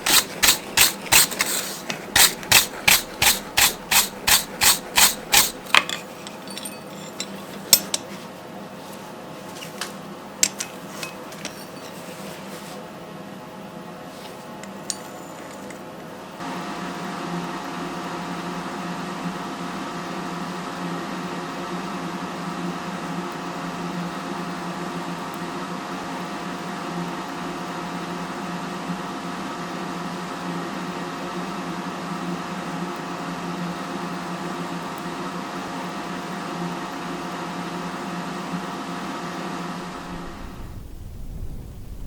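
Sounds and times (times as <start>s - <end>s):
small electric motor humming: 0.0s - 5.8s.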